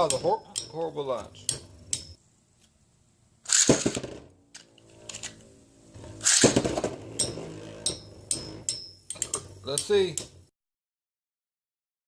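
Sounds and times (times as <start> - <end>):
spinning tops launching rush: 3.5 - 4.2, 6.2 - 7.4
metal-on-metal clicks: 6.2 - 10.4.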